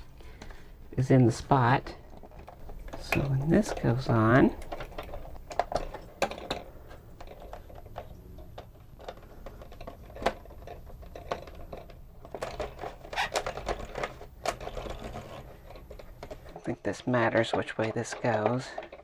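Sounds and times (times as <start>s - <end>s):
small plastic parts clicking: 2.0s - 19.0s.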